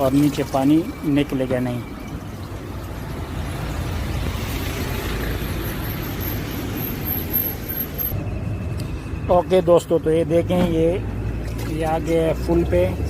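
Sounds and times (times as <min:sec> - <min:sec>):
washing machine filling with water: 0:00.0 - 0:05.0.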